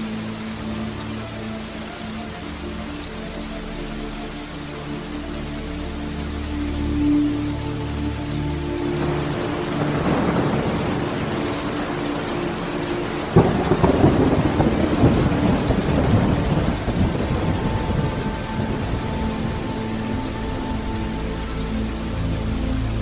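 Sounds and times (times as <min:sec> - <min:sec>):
steady rain: 0:00.0 - 0:23.0
thunder rumbling and cracking: 0:09.1 - 0:12.3, 0:13.2 - 0:19.6.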